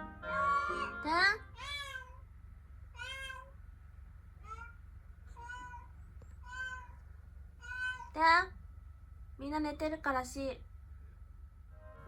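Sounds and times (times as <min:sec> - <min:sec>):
cat meowing: 0:00.4 - 0:02.2, 0:03.0 - 0:03.6, 0:04.4 - 0:07.0, 0:07.6 - 0:08.2.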